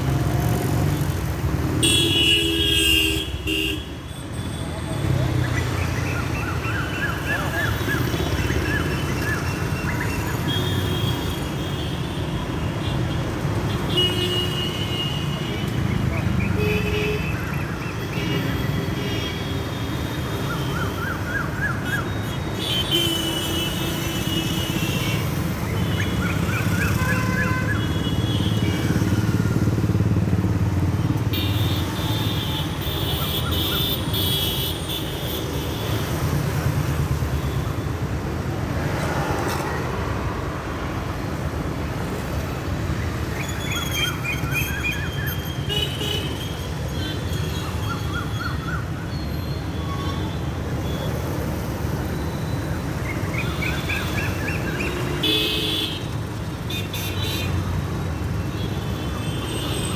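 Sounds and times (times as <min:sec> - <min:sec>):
vehicle horns honking: 0:01.8 - 0:04.0, 0:55.1 - 0:57.6.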